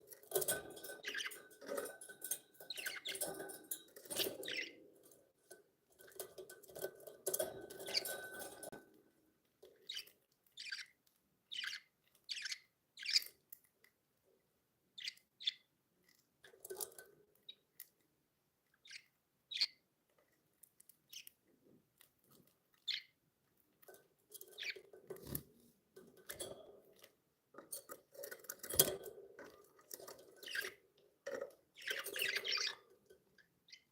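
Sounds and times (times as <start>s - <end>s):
budgerigars chirping: 9.9s - 10.9s, 11.5s - 13.3s, 31.8s - 32.8s.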